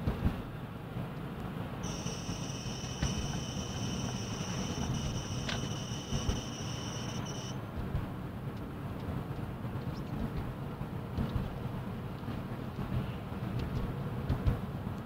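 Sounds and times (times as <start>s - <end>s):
high-pitched squeal: 1.8s - 7.6s.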